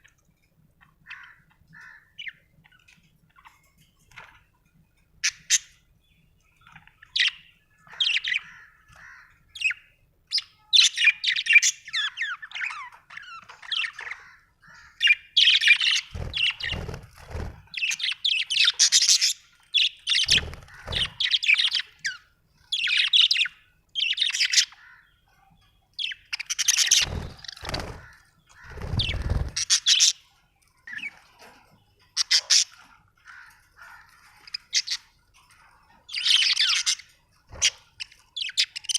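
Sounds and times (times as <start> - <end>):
budgerigars chirping: 15.0 - 22.2, 26.0 - 30.2, 37.6 - 38.9.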